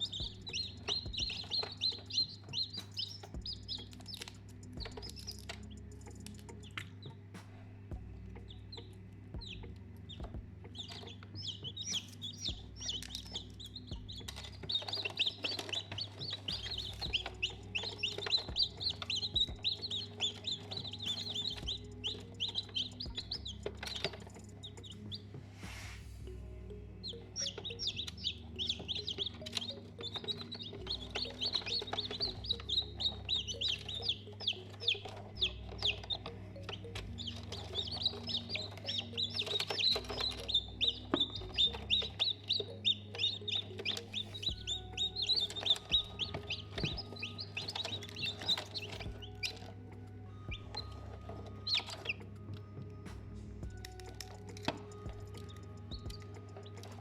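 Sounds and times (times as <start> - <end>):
baby chicks peeping: 0.0 - 57.0.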